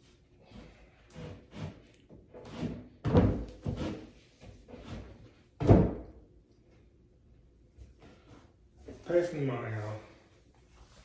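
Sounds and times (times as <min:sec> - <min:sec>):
furniture parts knocking and thudding: 0:03.0 - 0:04.0, 0:05.6 - 0:06.2.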